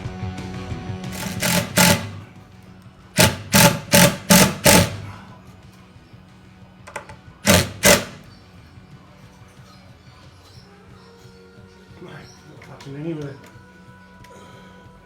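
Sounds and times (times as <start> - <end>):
power drill bursts: 1.1 - 2.4, 3.2 - 5.2, 7.4 - 8.3.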